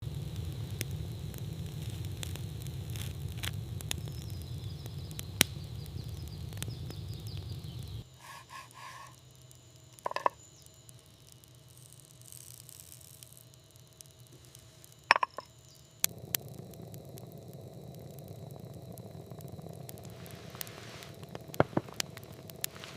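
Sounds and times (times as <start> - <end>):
campfire crackling: 0.0 - 22.9
fire pops: 0.0 - 22.9
isolated clicks: 8.8 - 22.9.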